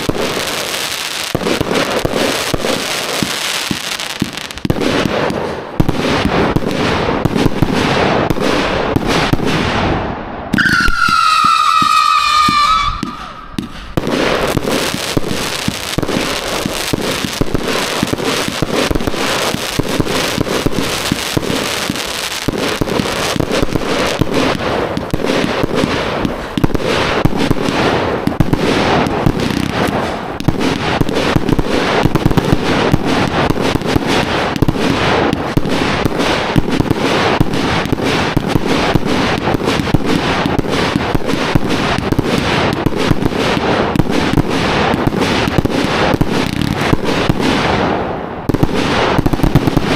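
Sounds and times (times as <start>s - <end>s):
firework cake barrage: 0.0s - 49.9s.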